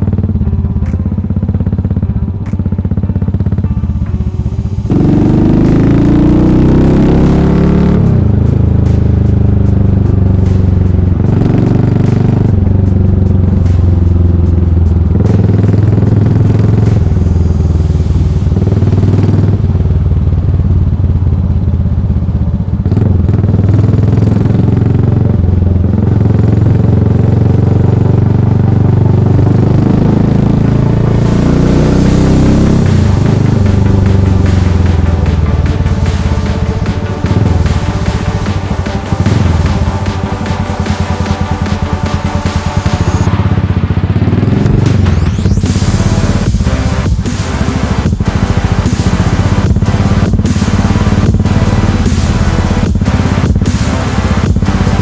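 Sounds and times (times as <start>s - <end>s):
motorcycle engine riding: 0.0s - 55.0s.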